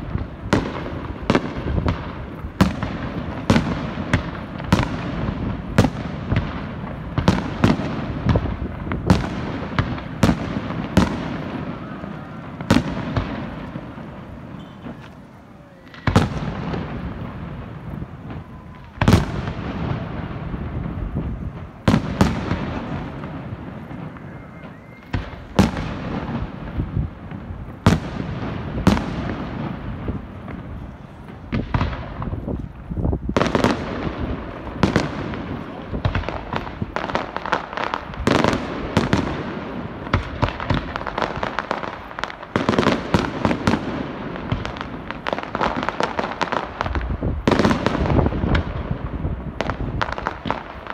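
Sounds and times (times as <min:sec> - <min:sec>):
fireworks bursting with bangs: 0:00.0 - 0:50.9
fireworks crackling: 0:00.0 - 0:50.9.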